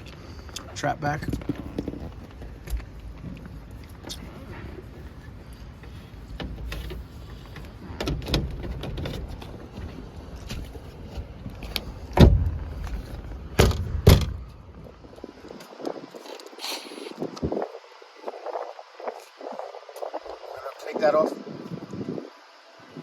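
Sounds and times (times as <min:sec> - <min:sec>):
steady low rumble: 0:00.0 - 0:23.0
metal panel knocks and clanks: 0:12.2 - 0:13.0, 0:13.6 - 0:14.4.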